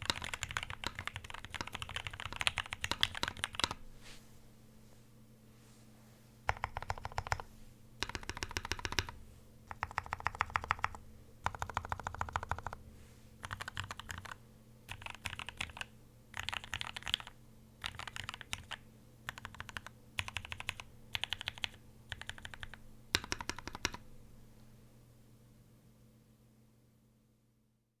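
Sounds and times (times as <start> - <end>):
mechanical keyboard typing: 0.0 - 3.8, 6.5 - 12.8, 13.4 - 24.0.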